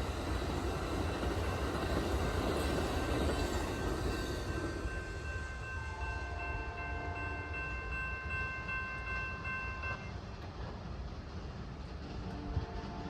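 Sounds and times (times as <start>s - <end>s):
low rumble of passing train: 0.0s - 13.0s
train air horn: 12.2s - 13.0s.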